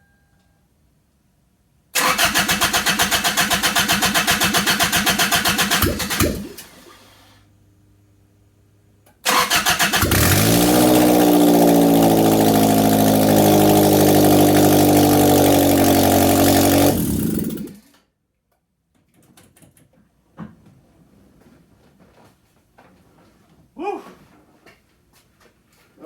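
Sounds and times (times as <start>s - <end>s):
engine cranking and revving: 2.0s - 7.1s, 9.2s - 18.0s.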